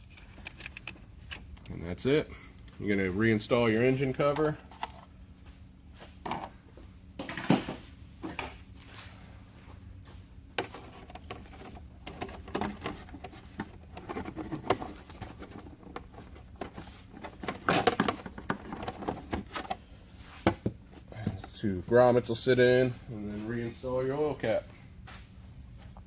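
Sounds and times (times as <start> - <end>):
plastic cover clicks and knocks: 10.6 - 19.8.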